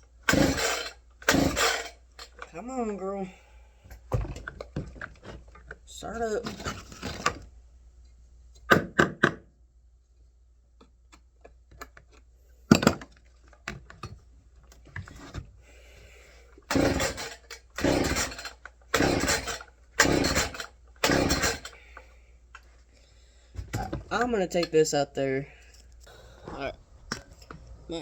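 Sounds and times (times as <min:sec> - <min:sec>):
chainsaw recoil starter pulls: 0:00.2 - 0:02.6, 0:16.6 - 0:21.8
engine turning over: 0:00.3 - 0:01.9, 0:16.7 - 0:21.7.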